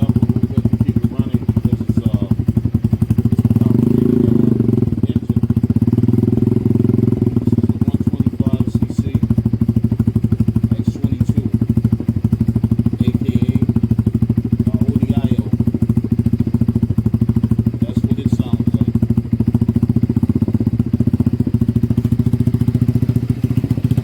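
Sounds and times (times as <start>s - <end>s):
motorcycle engine revving and idling: 0.0s - 24.0s.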